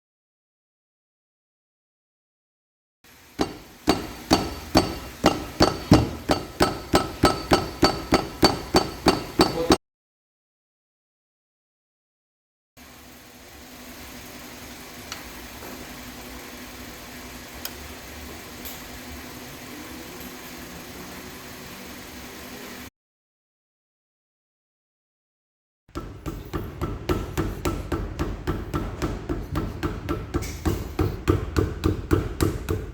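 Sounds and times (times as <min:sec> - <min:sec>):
sharp metallic knocks: 0:03.4 - 0:09.8.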